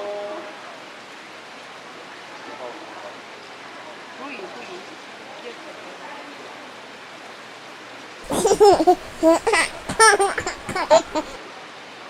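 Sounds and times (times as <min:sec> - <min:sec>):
high-pitched laughter: 0:08.3 - 0:11.4.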